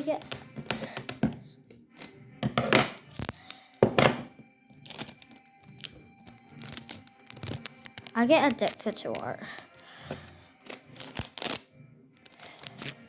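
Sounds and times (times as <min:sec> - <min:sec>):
quiet background music: 0:00.0 - 0:13.0
thumps on a table: 0:02.4 - 0:03.0, 0:03.8 - 0:04.4
paper and tape rustling: 0:04.8 - 0:11.6, 0:12.2 - 0:13.0.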